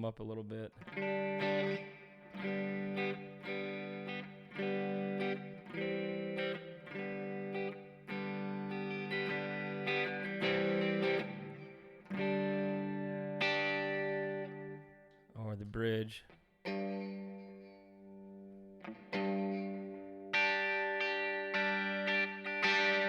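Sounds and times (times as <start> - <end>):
clean electric guitar chords: 0.8 - 15.3, 16.6 - 23.0.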